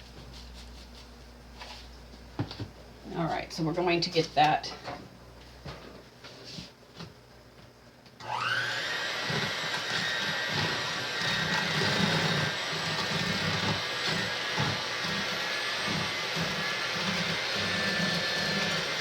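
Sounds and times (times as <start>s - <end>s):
electric mixer motor whine: 8.2s - 19.0s.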